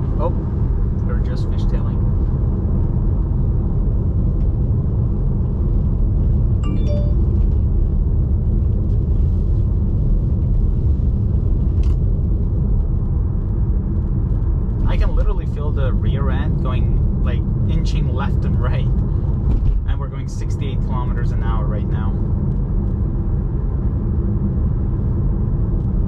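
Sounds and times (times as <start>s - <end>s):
electronic chime tones: 6.6s - 7.4s.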